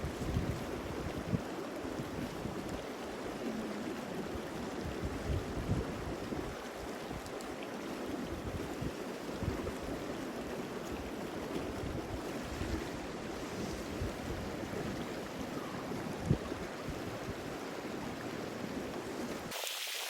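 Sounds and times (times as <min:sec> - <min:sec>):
river water flowing: 0:00.0 - 0:20.0
wind buffeting microphone: 0:04.3 - 0:07.2, 0:11.0 - 0:17.7.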